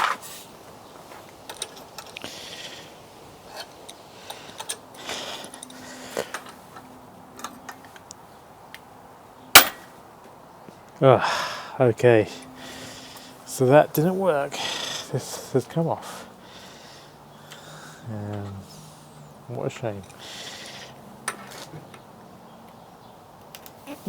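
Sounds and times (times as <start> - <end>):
metal clicks and creaks: 1.5 - 2.3, 3.5 - 8.2
loud sharp metal crack: 9.6 - 9.9.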